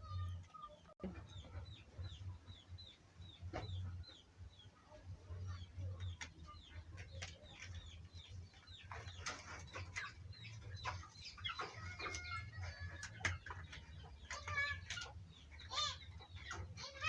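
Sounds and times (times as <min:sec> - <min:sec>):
birds chirping: 0:00.0 - 0:17.0
chickens clucking: 0:00.0 - 0:17.0.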